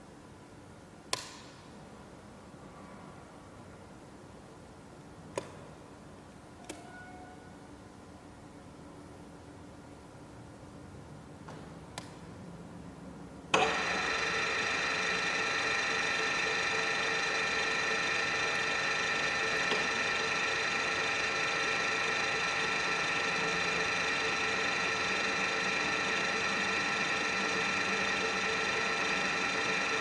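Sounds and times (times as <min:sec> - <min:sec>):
drill motor whining: 0:13.6 - 0:30.0.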